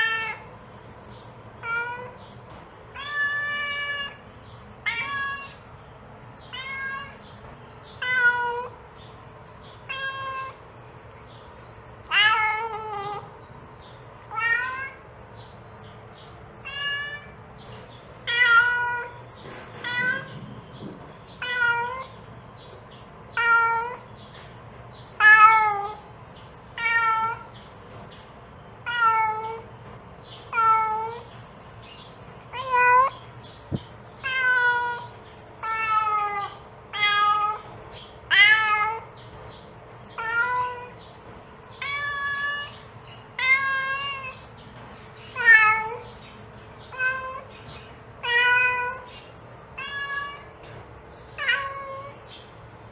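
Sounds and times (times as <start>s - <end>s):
cat meowing: 0.0s - 0.5s, 1.6s - 2.2s, 2.9s - 4.2s, 4.8s - 5.7s, 6.4s - 7.3s, 7.9s - 8.8s, 9.8s - 10.6s, 12.0s - 13.4s, 14.2s - 15.1s, 16.6s - 17.4s, 18.2s - 20.5s, 21.3s - 22.2s, 23.3s - 24.1s, 25.2s - 26.1s, 26.7s - 27.6s, 28.8s - 29.7s, 30.5s - 31.3s, 32.5s - 33.2s, 34.2s - 39.2s, 40.1s - 41.0s, 41.8s - 44.5s, 45.3s - 46.1s, 46.8s - 47.6s, 48.2s - 49.1s, 49.7s - 50.6s, 51.4s - 52.3s.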